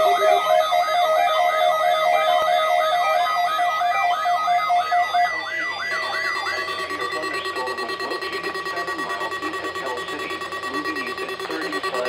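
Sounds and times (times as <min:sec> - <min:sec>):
electronic siren sweeps: 0:00.0 - 0:12.0
steady high alert tone: 0:00.0 - 0:12.0.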